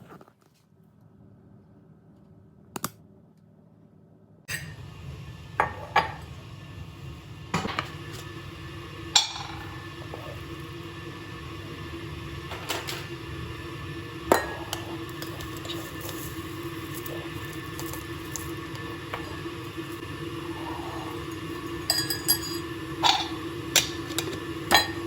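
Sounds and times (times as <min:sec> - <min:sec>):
steady low hum: 0:00.0 - 0:25.0
kitchenware clinking: 0:09.2 - 0:10.3, 0:12.5 - 0:13.1, 0:21.9 - 0:25.0.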